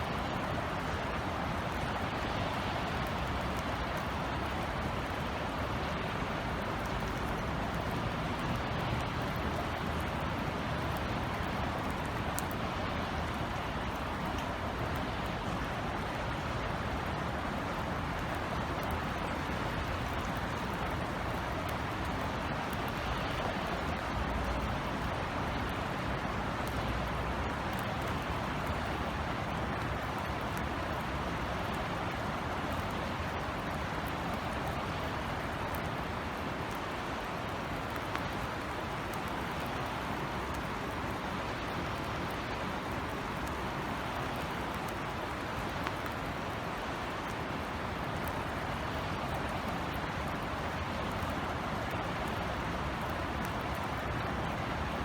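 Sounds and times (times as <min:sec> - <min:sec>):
steady rain hiss: 0:00.0 - 0:55.0
drip ticks: 0:00.1 - 0:55.0.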